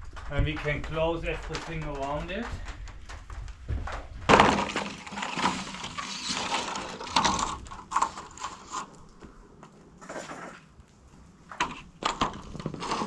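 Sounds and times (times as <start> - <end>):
roof panels clattering: 0.0 - 8.8.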